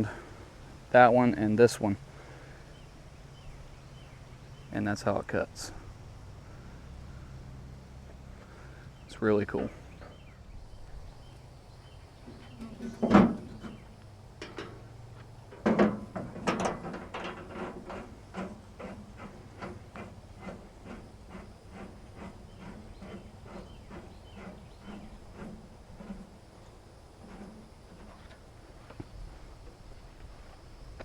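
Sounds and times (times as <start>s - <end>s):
loud knocks on metal housing: 12.3s - 13.8s, 15.6s - 17.5s.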